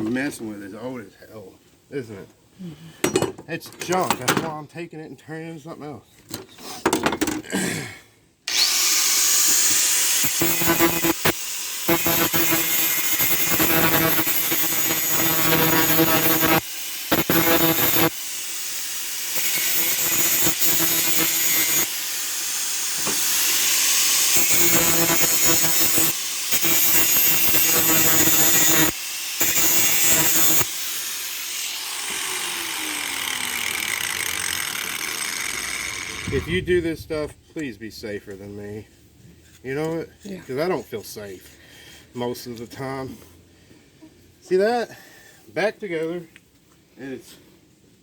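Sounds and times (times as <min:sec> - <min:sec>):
angle grinder cutting steel pipe: 0:08.5 - 0:36.7.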